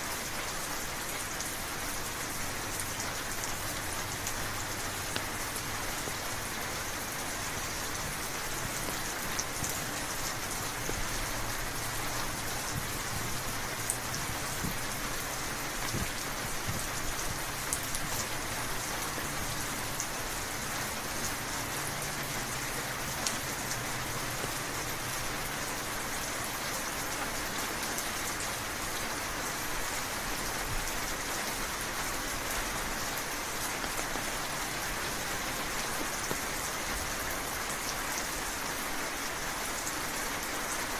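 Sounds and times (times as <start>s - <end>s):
steady rainfall: 0.0s - 40.9s
rain drop taps: 5.1s - 6.2s, 7.9s - 20.1s.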